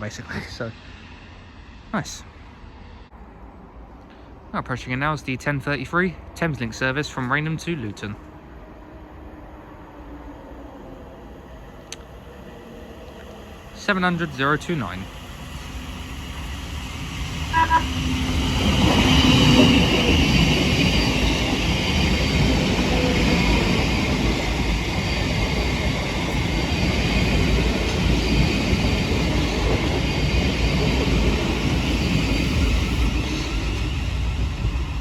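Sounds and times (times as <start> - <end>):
train rumble and wheel noise: 0.0 - 35.0
train horn toot: 17.5 - 18.0.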